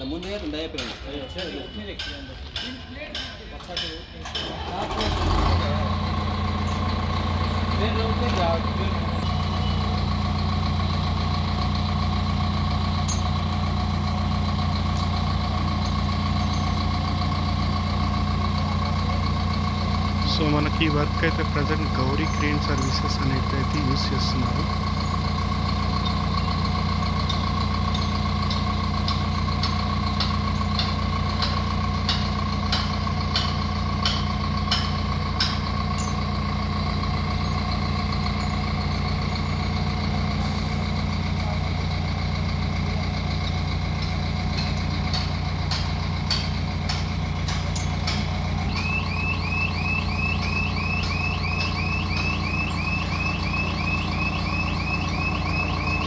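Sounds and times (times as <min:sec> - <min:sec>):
heavy diesel engine running: 0:04.3 - 0:56.0
fast chirping alarm: 0:09.1 - 0:10.6, 0:15.9 - 0:18.0, 0:48.6 - 0:56.0
high warning tone: 0:20.0 - 0:29.3, 0:47.8 - 0:56.0.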